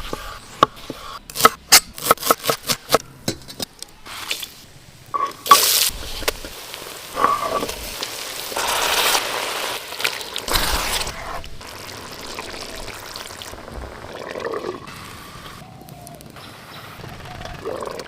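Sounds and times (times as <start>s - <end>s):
liquid being poured: 10.0s - 14.9s.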